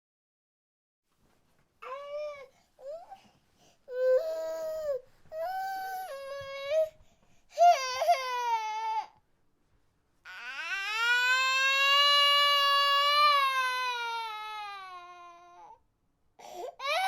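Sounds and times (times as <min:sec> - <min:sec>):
baby crying: 0:03.9 - 0:07.0, 0:07.6 - 0:09.2, 0:10.3 - 0:15.8, 0:16.4 - 0:17.0.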